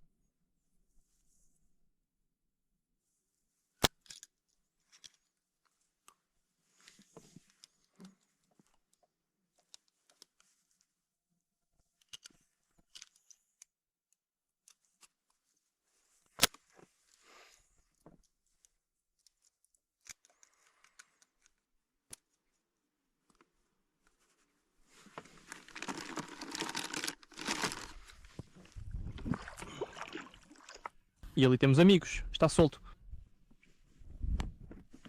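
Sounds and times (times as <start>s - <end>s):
rough rustling noise: 23.5s - 31.5s, 32.5s - 35.0s.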